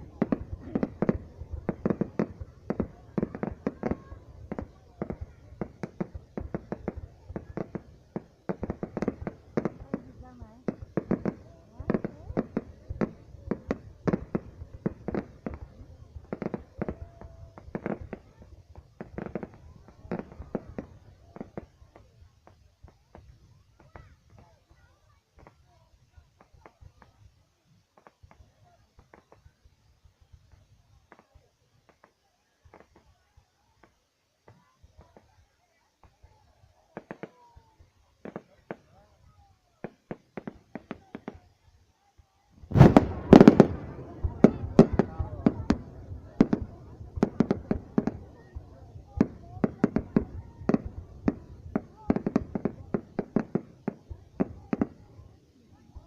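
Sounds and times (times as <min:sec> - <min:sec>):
fireworks bangs: 0:00.0 - 0:24.6, 0:42.6 - 0:56.0.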